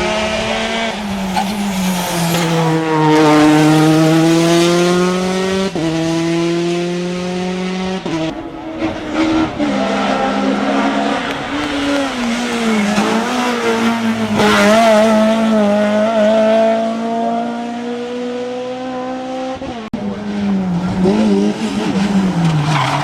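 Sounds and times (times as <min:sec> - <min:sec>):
rally car engine at high revs: 0:00.0 - 0:23.0.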